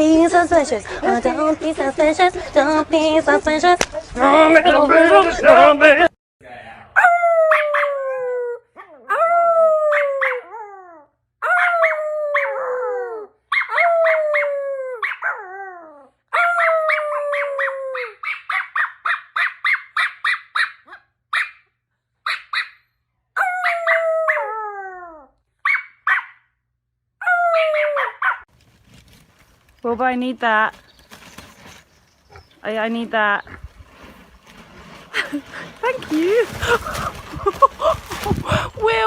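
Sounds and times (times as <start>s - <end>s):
dog yipping: 7.0s - 8.0s, 9.9s - 10.6s, 13.5s - 15.5s, 16.3s - 24.5s, 25.6s - 26.5s, 27.2s - 28.5s
dog howling: 7.0s - 18.2s, 23.4s - 25.3s, 27.2s - 28.4s.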